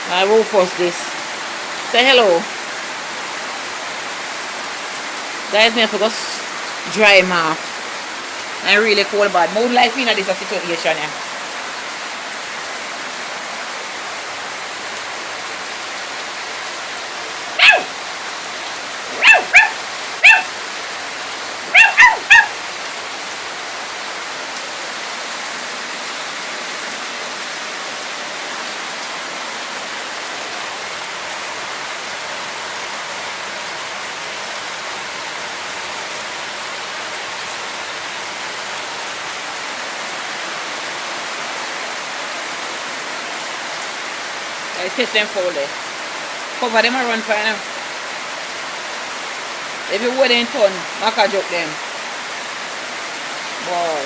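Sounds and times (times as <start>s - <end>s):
rain hissing: 0.0s - 54.0s
puppy barking in high yaps: 17.6s - 18.0s, 19.1s - 20.6s, 21.6s - 22.6s.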